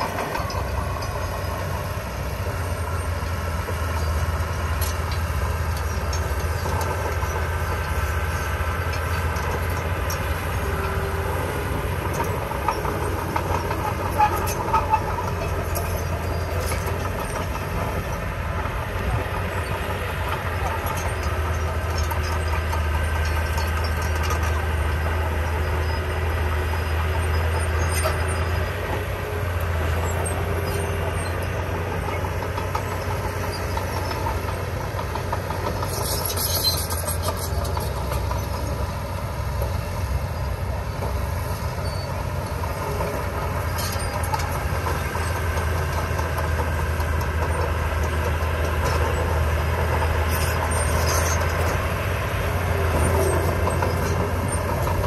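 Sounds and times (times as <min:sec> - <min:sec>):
heavy diesel machinery running: 0:00.0 - 0:55.0
high-pitched squeak: 0:35.8 - 0:38.0.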